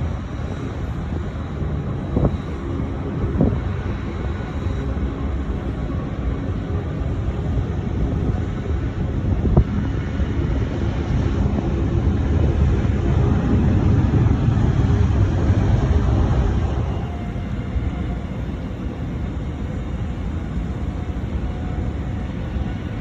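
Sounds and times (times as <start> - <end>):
jet engines rumbling: 0.0 - 23.0
wind buffeting microphone: 0.0 - 23.0.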